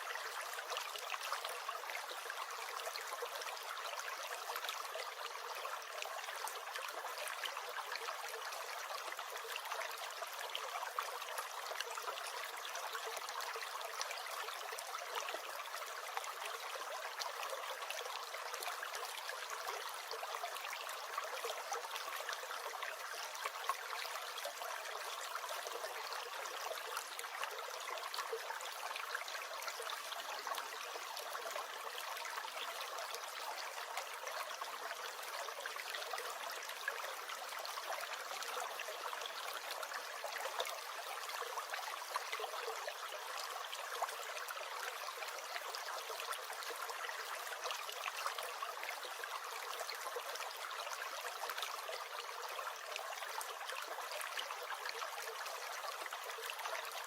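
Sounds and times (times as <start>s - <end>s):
stream gurgling: 0.0s - 57.0s.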